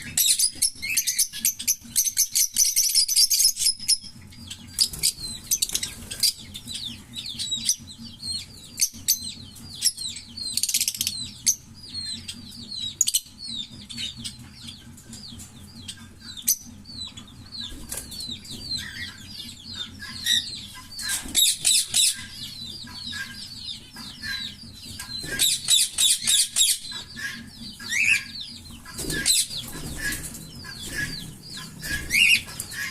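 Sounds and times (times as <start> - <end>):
lovebirds chirping and twittering: 0.0 - 32.9.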